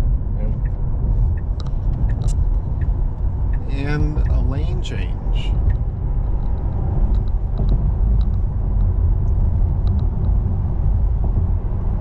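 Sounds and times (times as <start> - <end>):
road and tyre rumble in car: 0.0 - 12.0
faint light ticks: 0.6 - 4.5, 6.4 - 10.4.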